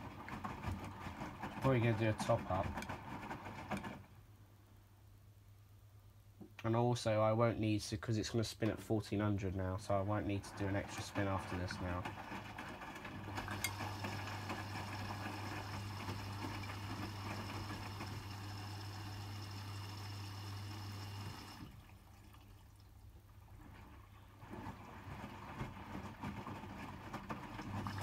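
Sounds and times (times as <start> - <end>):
washing machine low hum: 0.0 - 4.3, 8.7 - 28.0
water running in: 9.9 - 23.0, 27.2 - 28.0.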